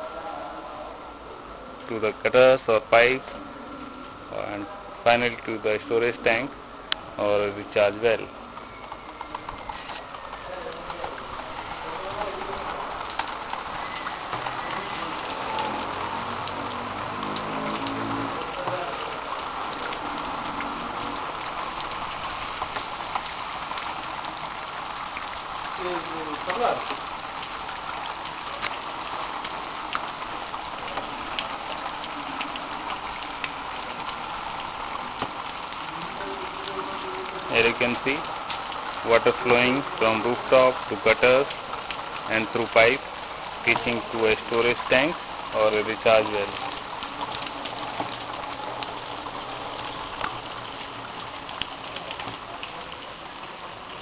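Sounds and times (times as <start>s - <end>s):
artificial rain hissing: 0.0s - 54.0s
rushing water: 0.0s - 54.0s
sharp water drips: 1.0s - 54.0s
sharp water drop ticks: 8.6s - 11.2s, 16.4s - 18.8s.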